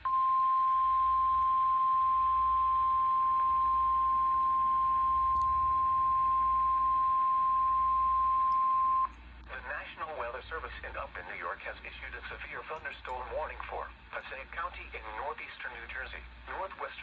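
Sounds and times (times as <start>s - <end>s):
steady alarm beep: 0.0s - 9.1s.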